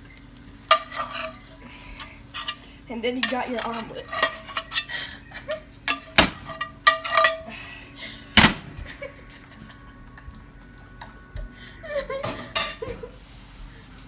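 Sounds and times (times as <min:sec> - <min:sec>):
kitchenware clinking and knocking: 0:00.7 - 0:07.7, 0:08.3 - 0:09.1
sharp knocks: 0:08.4 - 0:08.8.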